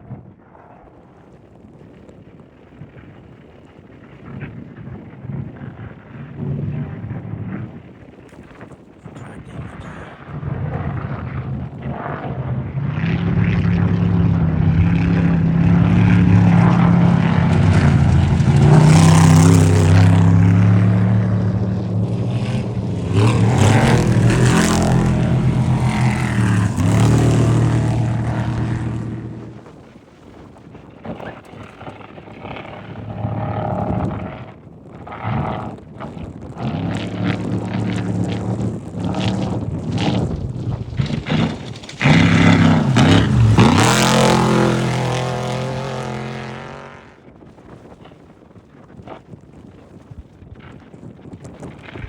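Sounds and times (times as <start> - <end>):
race vehicle engines passing: 9.8 - 29.7, 36.6 - 47.2.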